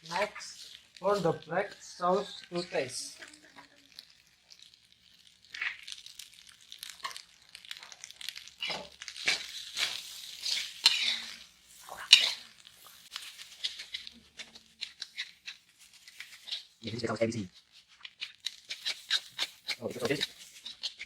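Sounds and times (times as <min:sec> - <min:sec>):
rice sizzling in a pan: 0:00.0 - 0:21.0
spatula scraping a pan: 0:00.0 - 0:21.0.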